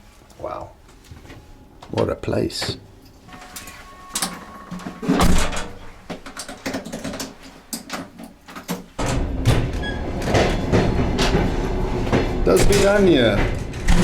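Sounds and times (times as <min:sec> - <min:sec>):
knocks and clunks: 0:04.7 - 0:14.0
train rumbling: 0:09.0 - 0:14.0.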